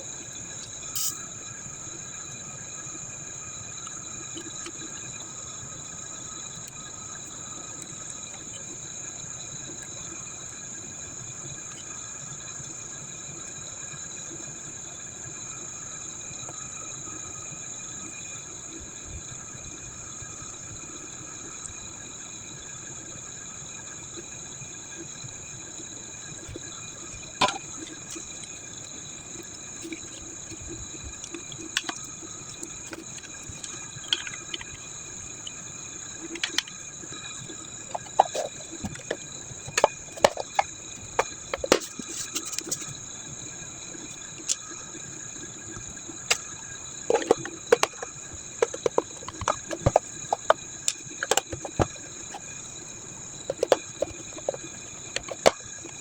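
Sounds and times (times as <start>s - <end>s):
faint high whining tones: 0.0s - 56.0s
steady hiss: 0.0s - 56.0s
sharp clicks and light knocks: 36.3s - 36.8s.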